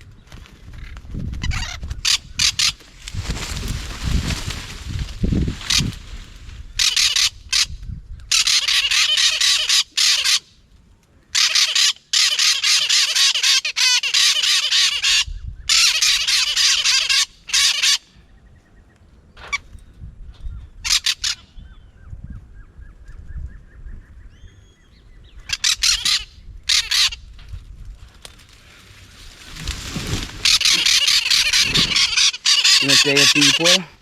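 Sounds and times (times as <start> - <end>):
parrots giving harsh calls: 6.8 - 7.7, 8.3 - 10.5, 11.3 - 18.0, 25.5 - 27.2, 30.4 - 33.9.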